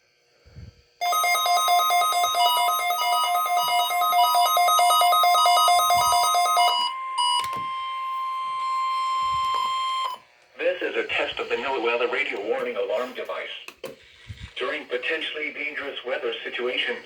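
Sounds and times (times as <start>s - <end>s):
steady warning tone: 1.0s - 10.2s.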